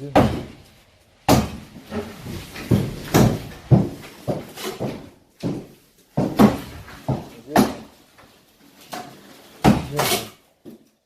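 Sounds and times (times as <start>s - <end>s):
hollow knocks and bangs: 0.0s - 8.0s, 8.9s - 10.8s.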